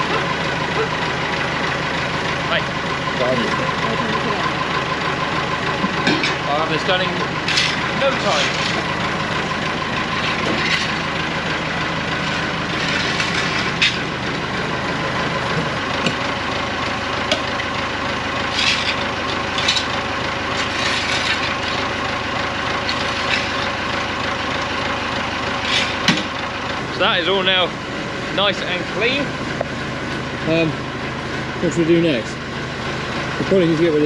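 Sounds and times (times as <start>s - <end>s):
tractor engine running: 0.0s - 34.0s
loader bucket scraping floor: 7.2s - 24.1s, 25.5s - 26.5s.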